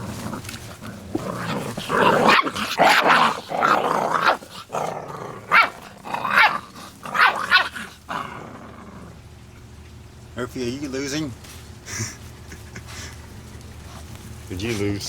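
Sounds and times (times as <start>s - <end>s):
puppies yelping: 0.0s - 9.2s
puppies growling: 0.0s - 9.8s.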